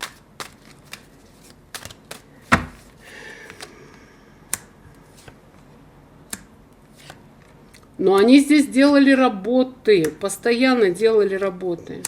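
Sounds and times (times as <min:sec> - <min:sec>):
cards clicking and tapping: 0:00.0 - 0:03.7
cards sliding rustle: 0:00.0 - 0:03.7, 0:05.0 - 0:05.4, 0:06.8 - 0:07.9.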